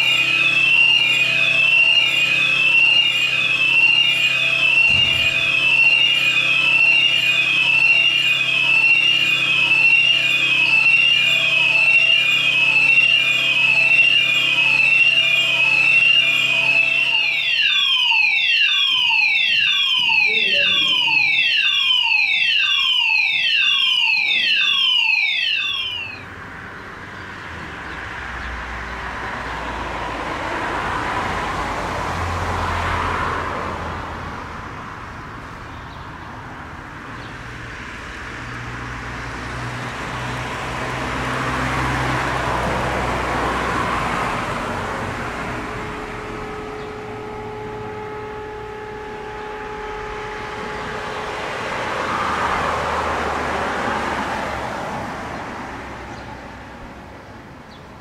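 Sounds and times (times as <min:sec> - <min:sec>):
fire alarm falling evacuation tone: 0:00.0 - 0:26.3, 0:40.0 - 0:55.0.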